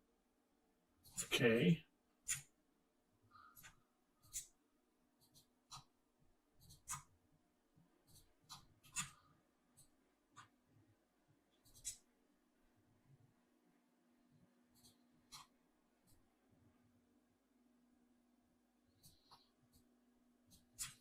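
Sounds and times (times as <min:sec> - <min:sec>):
computer mouse clicks: 0:02.3 - 0:02.5, 0:05.2 - 0:06.0, 0:06.6 - 0:07.1, 0:08.1 - 0:09.2, 0:11.6 - 0:12.1, 0:14.7 - 0:16.2, 0:19.0 - 0:19.9, 0:20.5 - 0:21.0
faint low hum: 0:09.1 - 0:21.0.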